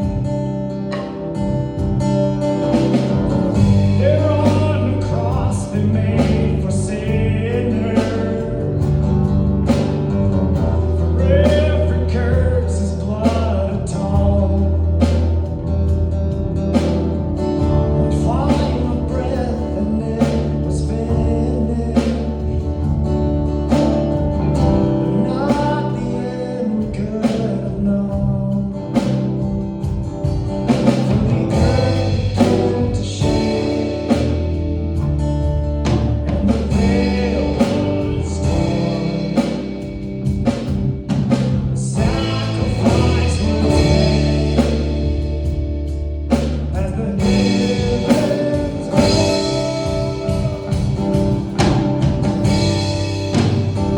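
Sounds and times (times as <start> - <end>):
drum kit hits: 0.0 - 53.9
low bass notes: 0.0 - 53.9
worship band playing: 0.0 - 53.9
person singing: 3.6 - 9.0, 10.8 - 15.3, 17.8 - 22.7, 24.8 - 29.3, 30.8 - 35.1, 36.3 - 40.8, 41.7 - 45.5, 46.7 - 51.7.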